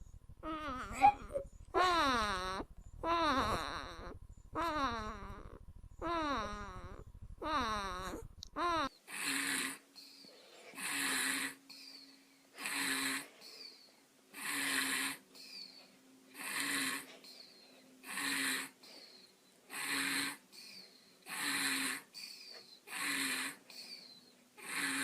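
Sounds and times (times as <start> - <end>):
baby snoring: 0.4 - 9.8, 10.7 - 12.0, 12.6 - 13.7, 14.3 - 15.2, 16.3 - 17.1, 18.0 - 18.8, 19.7 - 25.0.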